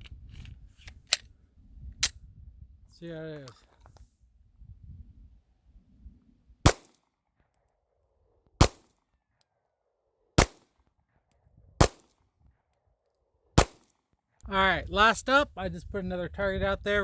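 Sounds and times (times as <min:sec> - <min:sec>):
pistol shots: 0:06.7 - 0:07.0, 0:08.6 - 0:08.9, 0:10.4 - 0:10.6, 0:11.8 - 0:12.1, 0:13.6 - 0:13.8.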